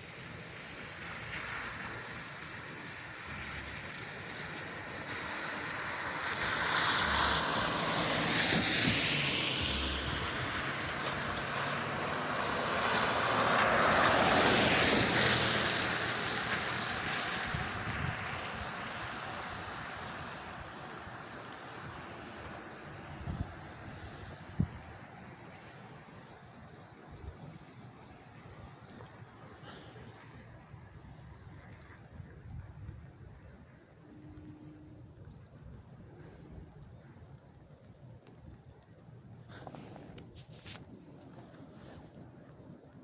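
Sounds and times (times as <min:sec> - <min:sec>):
tyres hissing on wet road: 0:00.0 - 0:32.0.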